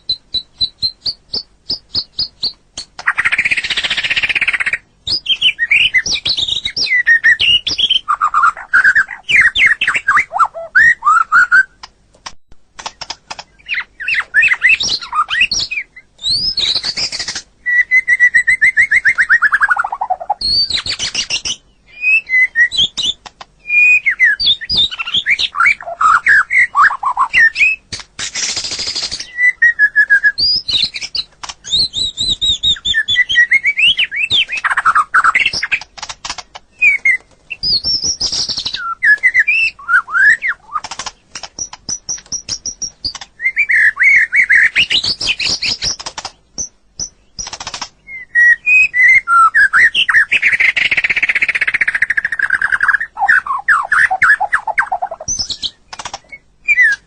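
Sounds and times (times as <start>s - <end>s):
bird singing varied song: 0.0s - 57.0s.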